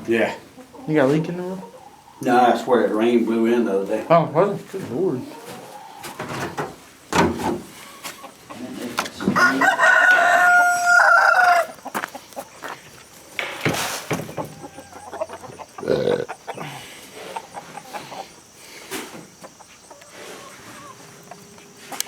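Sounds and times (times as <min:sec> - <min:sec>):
rooster crowing: 0:09.2 - 0:12.1, 0:14.3 - 0:16.8
chicken call: 0:09.4 - 0:12.0, 0:14.4 - 0:18.4
knocks: 0:13.4 - 0:14.6.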